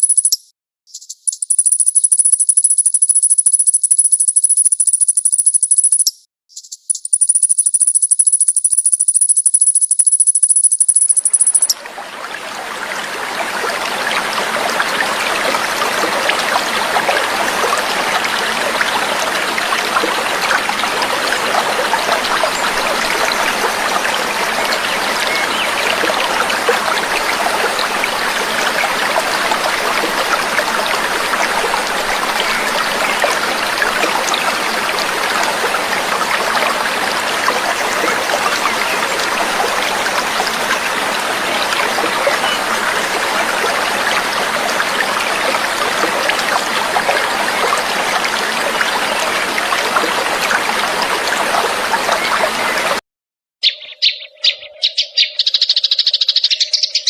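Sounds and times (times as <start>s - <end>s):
high steady trill: 1.3s - 6.1s, 6.9s - 11.7s
stream trickling: 7.1s - 53.0s.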